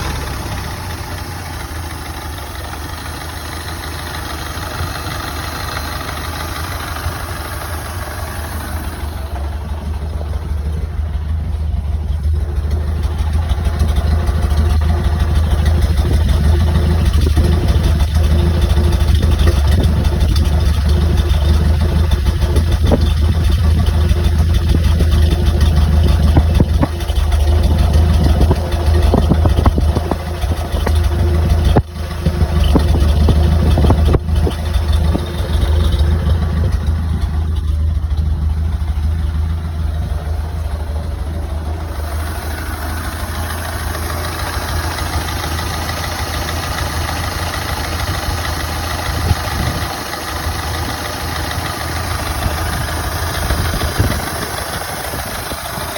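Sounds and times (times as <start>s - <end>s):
old car engine misfiring: 0.0s - 55.9s.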